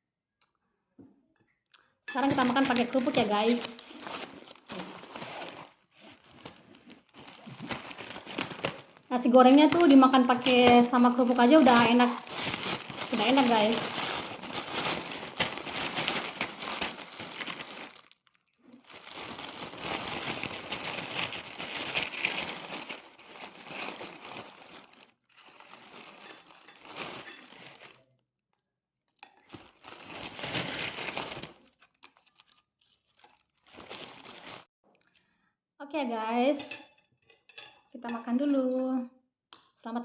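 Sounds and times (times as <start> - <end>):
plastic bag crinkling: 2.1 - 28.1, 29.4 - 34.7.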